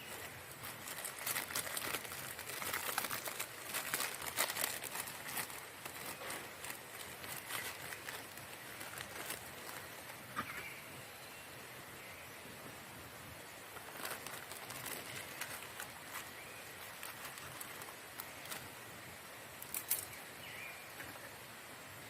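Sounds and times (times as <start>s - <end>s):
faint steady hiss: 0.0s - 22.0s
sharp clicks and crackles: 0.1s - 10.2s, 13.8s - 18.7s, 19.6s - 20.2s.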